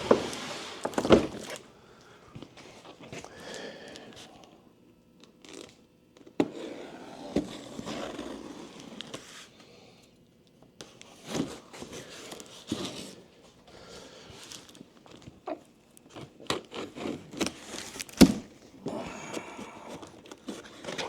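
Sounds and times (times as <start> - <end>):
cardboard and tape tearing: 16.1 - 18.5.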